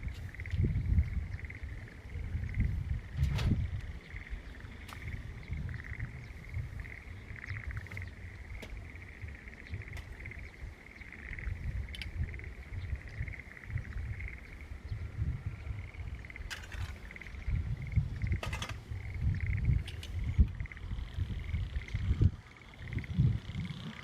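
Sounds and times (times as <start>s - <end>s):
frogs trilling: 0.0s - 24.0s
faint clicks: 11.9s - 12.2s.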